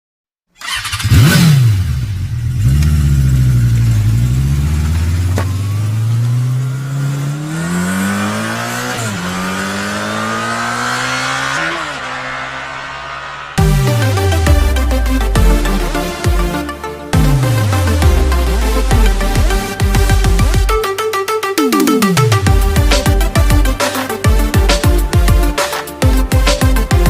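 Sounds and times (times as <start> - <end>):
vehicle engine revving: 0.6 - 20.7.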